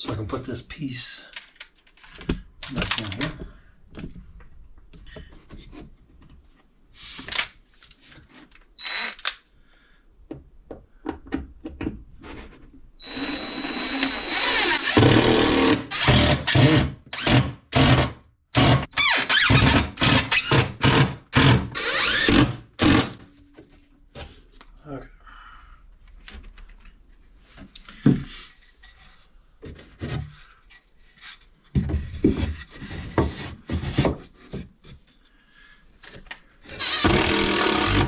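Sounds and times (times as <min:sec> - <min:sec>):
power drill driving screws: 0:08.8 - 0:09.4, 0:13.0 - 0:23.2, 0:36.8 - 0:38.0.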